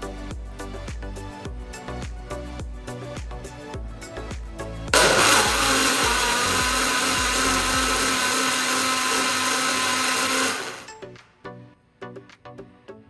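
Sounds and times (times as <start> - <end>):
blender motor running: 5.0 - 10.9.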